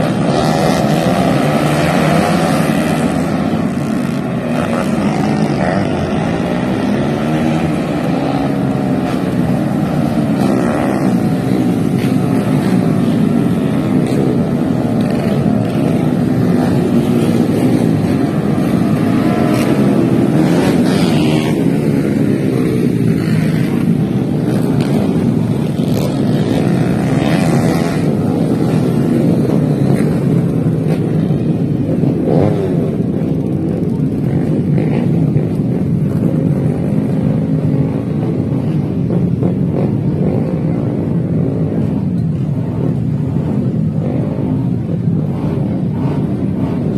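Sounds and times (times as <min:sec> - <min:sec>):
motorcycle passing by: 0:00.0 - 0:30.2
racing motorcycles revving: 0:00.0 - 0:46.9.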